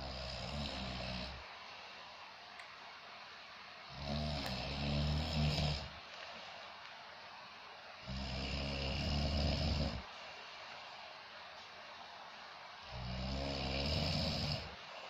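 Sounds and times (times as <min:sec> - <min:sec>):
man snoring: 0:00.0 - 0:01.4, 0:03.9 - 0:06.0, 0:08.0 - 0:10.1, 0:12.8 - 0:14.8.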